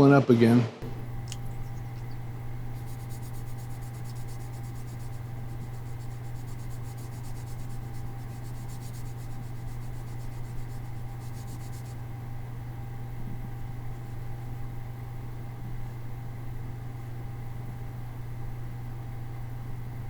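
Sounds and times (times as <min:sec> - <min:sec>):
crayon scratching on wood: 0:00.8 - 0:12.0
steady low hum: 0:00.8 - 0:20.0.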